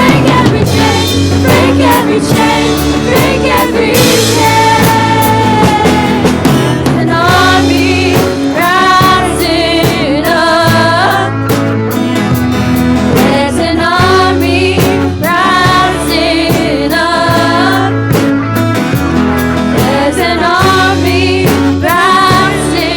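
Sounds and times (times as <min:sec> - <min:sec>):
person singing: 0:00.0 - 0:11.4
live band playing worship song: 0:00.0 - 0:22.9.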